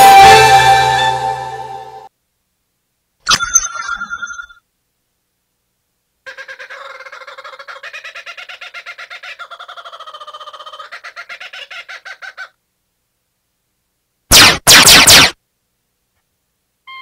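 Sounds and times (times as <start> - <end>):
rapid chicken-like clucking: 6.3 - 12.6.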